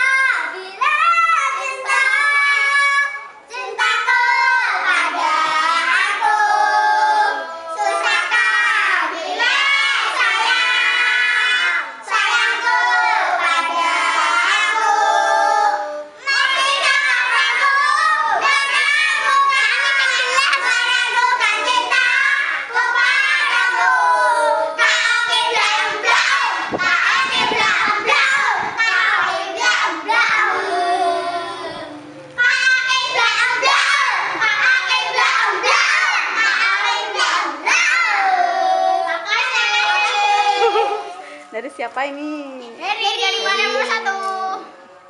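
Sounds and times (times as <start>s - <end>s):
children singing together: 0.0s - 41.5s, 42.9s - 45.0s.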